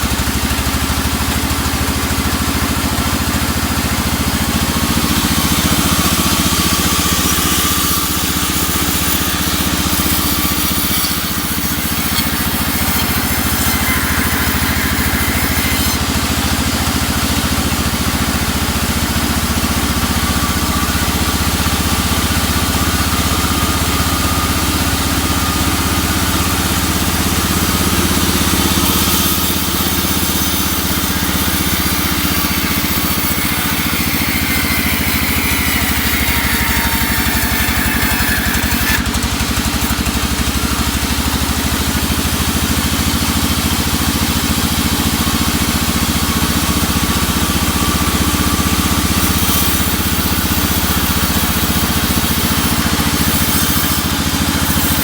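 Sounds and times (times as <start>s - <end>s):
sawmill engine running: 0.0s - 55.0s.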